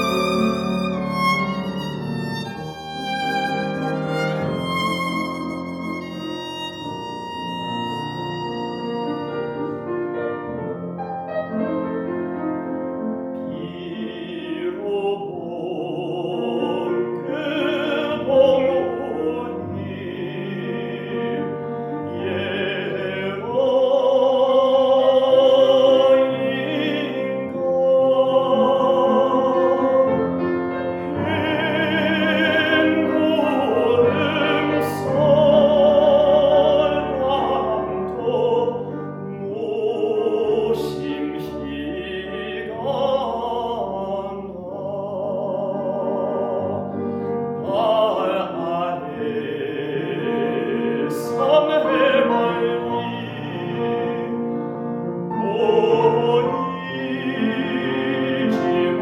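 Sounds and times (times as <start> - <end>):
operatic vibrato melody: 0.0 - 9.9
piano: 0.0 - 59.0.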